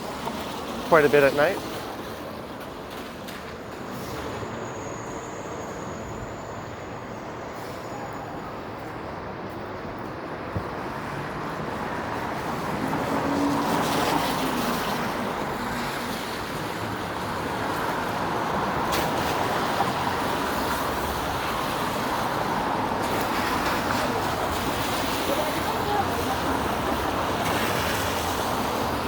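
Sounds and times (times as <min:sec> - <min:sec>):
car tyres hissing on wet road: 0:12.7 - 0:29.0.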